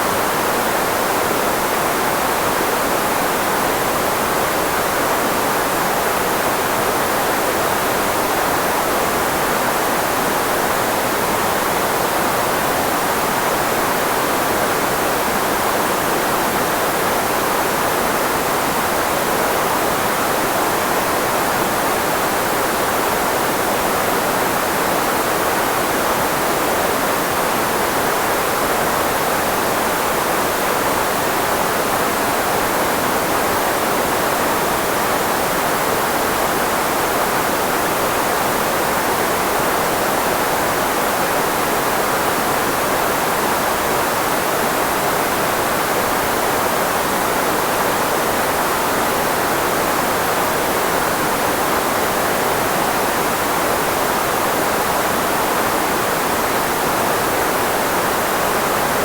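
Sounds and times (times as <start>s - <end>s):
filtered white noise: 0.0s - 59.0s.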